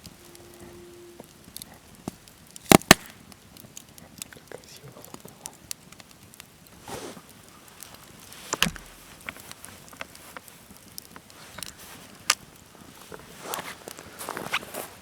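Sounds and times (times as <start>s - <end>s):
sharp wood cracks: 1.2s - 12.7s
firewood snapping and knocking: 1.5s - 12.5s.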